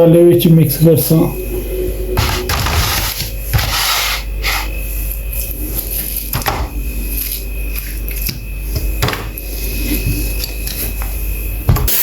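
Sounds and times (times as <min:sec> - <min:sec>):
low hum: 0:00.0 - 0:07.0.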